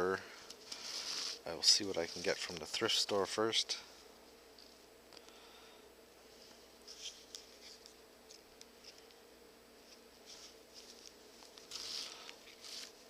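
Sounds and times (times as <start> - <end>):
faint steady hum: 0.0 - 13.0
leather being handled: 9.9 - 13.0.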